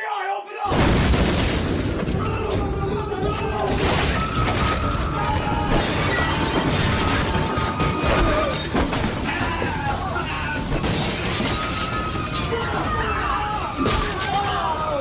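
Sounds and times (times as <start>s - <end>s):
crashing shattering effects: 3.7s - 13.1s.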